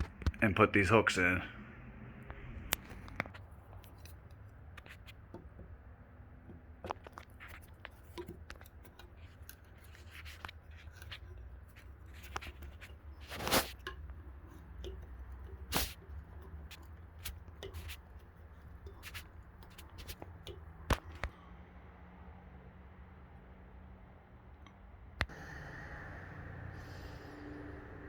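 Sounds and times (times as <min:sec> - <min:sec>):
metal screw hooks clicking and scraping: 0:06.9 - 0:20.7
steady low hum: 0:25.2 - 0:28.0.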